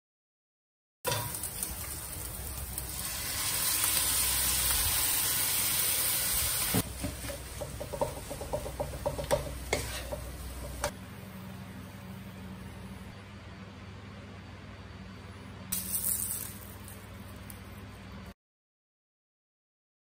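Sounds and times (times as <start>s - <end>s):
food sizzling in a pan: 1.1s - 11.0s, 15.7s - 17.1s
utensil scraping against a pan: 9.2s - 10.9s.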